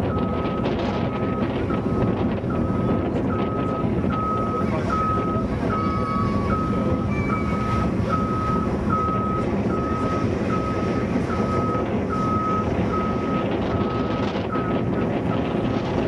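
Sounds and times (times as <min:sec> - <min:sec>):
reversing alarm beeping: 0:00.0 - 0:15.5
low rumble: 0:00.0 - 0:16.0.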